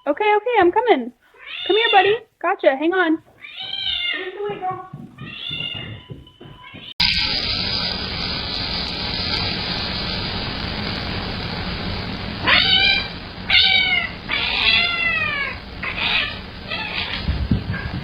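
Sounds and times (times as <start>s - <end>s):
cat meowing: 1.4s - 2.2s, 3.4s - 4.6s, 5.2s - 6.9s, 12.4s - 18.0s
steady hiss: 7.0s - 18.0s.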